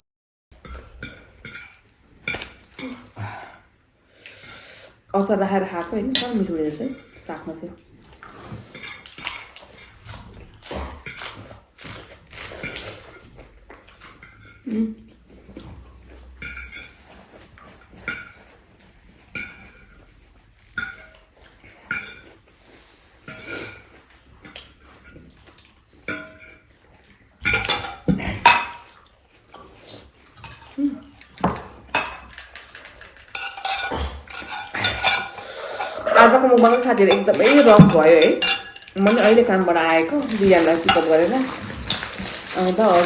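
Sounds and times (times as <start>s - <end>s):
cutlery clinking on plates: 16.4s - 17.0s, 19.3s - 20.1s, 20.8s - 21.2s, 21.9s - 22.4s, 26.0s - 26.6s, 27.4s - 28.9s, 30.4s - 43.0s.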